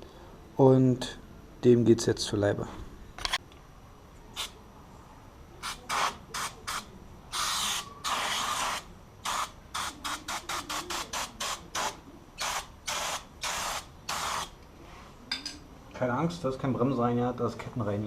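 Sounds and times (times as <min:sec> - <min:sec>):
spray can hissing: 0:05.6 - 0:14.6.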